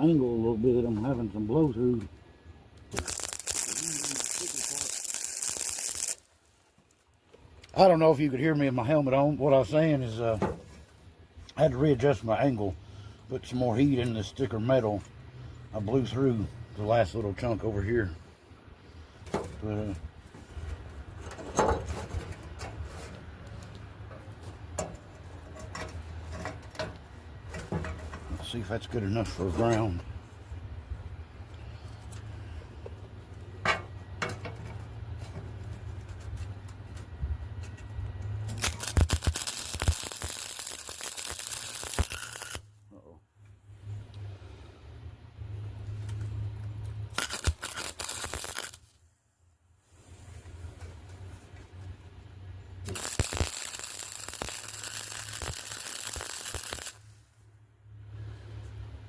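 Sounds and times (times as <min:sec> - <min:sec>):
electric welder humming: 0:02.9 - 0:06.3, 0:38.5 - 0:42.6, 0:47.1 - 0:48.8, 0:52.8 - 0:57.0
welding arc crackling and hissing: 0:02.9 - 0:06.3, 0:38.5 - 0:42.7, 0:47.1 - 0:48.9, 0:52.8 - 0:57.1.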